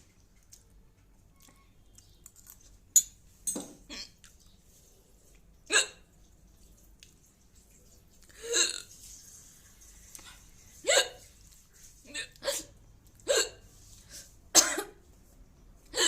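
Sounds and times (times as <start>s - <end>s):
woman hiccuping: 5.7s - 6.0s, 10.9s - 11.2s, 13.3s - 13.6s.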